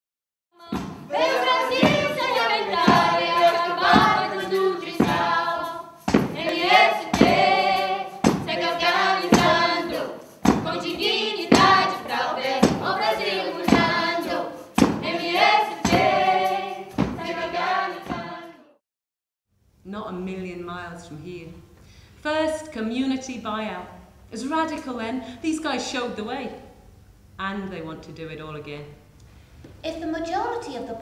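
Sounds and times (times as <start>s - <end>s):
sharp rhythmic hits: 0.6s - 18.6s
choir singing: 0.6s - 18.8s.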